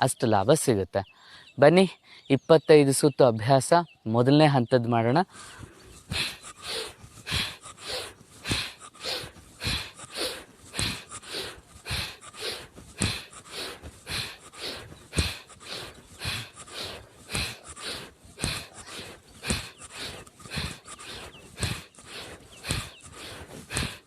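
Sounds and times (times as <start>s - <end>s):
forceful rhythmic breathing: 5.0s - 24.0s.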